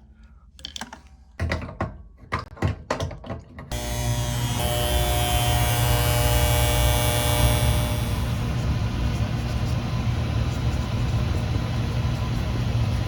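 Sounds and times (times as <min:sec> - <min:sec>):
heat pump humming and whirring: 0:03.7 - 0:13.0.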